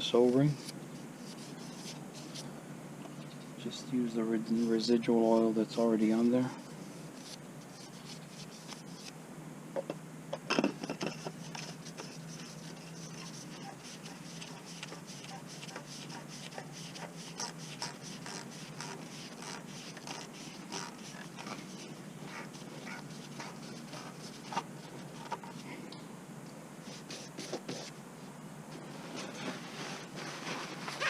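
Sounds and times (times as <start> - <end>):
hands rubbing plastic cap: 7.2 - 9.1, 11.2 - 25.7.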